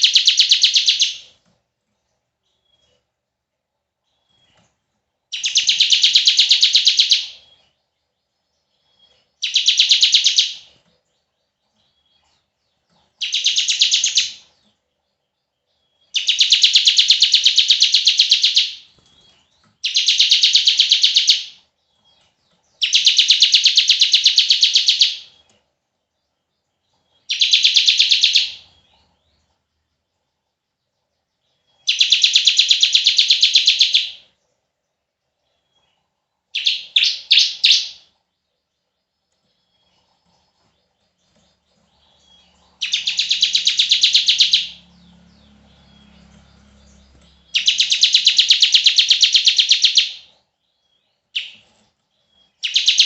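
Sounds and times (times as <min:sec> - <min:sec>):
bird rattling trills: 0:41.8 - 0:50.1.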